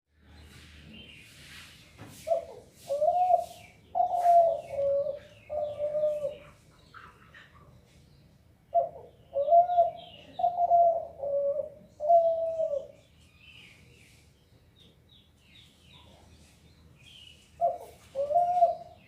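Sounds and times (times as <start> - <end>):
small birds chirping: 0.1 - 19.0
dove cooing: 2.2 - 6.6, 8.7 - 13.0, 17.6 - 19.0.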